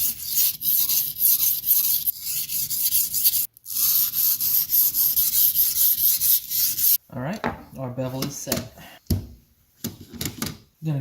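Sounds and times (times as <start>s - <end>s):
knife scraping on sharpening stone: 0.0s - 7.0s.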